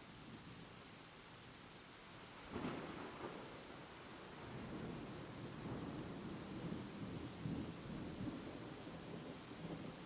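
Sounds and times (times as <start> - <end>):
thunderclap: 2.5 - 3.8.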